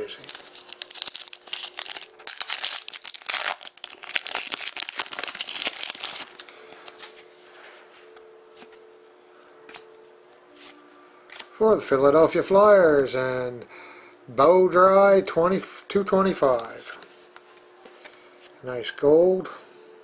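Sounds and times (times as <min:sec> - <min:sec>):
packaging crinkling: 0:00.0 - 0:07.3
faint steady hum: 0:00.0 - 0:20.0.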